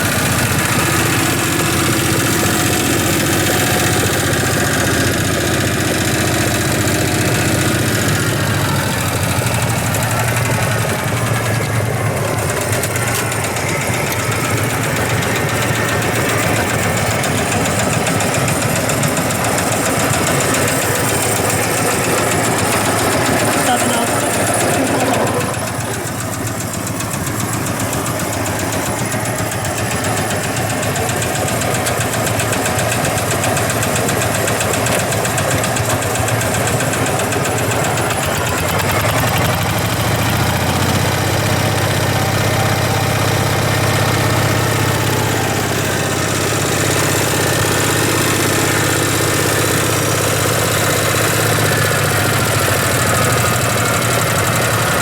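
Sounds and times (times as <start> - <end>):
vintage engine knocking: 0.0 - 55.0.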